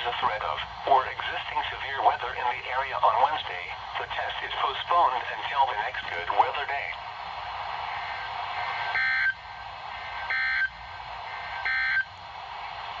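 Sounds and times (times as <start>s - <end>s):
radio hiss: 0.0s - 9.0s.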